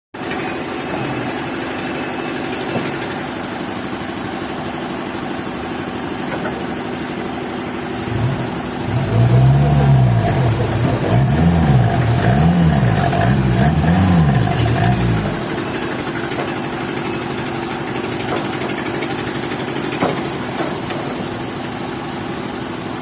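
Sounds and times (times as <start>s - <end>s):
engine running and revving: 8.0s - 16.0s.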